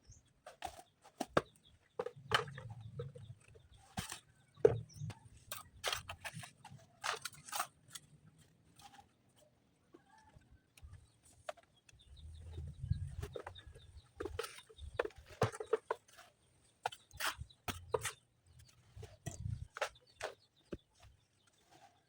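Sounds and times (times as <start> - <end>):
chickens clucking: 9.9 - 22.0.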